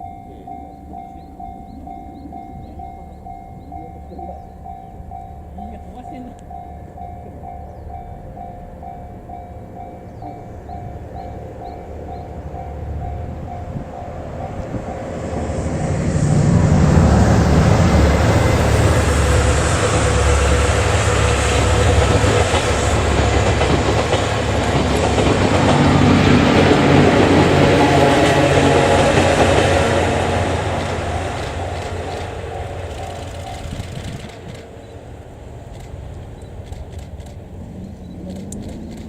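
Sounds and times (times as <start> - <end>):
level crossing warning bell: 0.0 - 15.4, 26.8 - 33.8
train rumble passing close: 0.0 - 39.0
wheels clattering over rail joints: 18.2 - 37.6.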